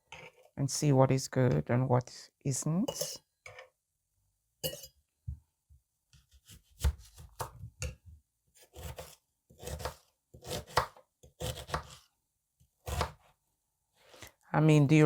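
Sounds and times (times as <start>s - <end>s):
knife chopping on cutting board: 6.2s - 8.0s, 8.7s - 12.0s, 12.9s - 13.2s.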